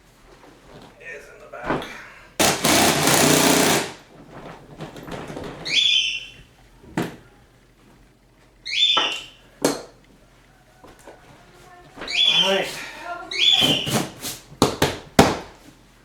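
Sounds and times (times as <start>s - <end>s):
power tool rattling: 2.4s - 4.1s
short squeaks: 5.6s - 6.5s, 12.0s - 12.6s.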